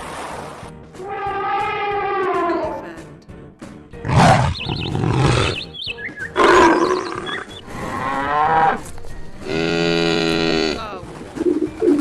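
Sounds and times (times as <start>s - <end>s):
elephant roaring: 1.0s - 2.8s, 4.0s - 5.6s.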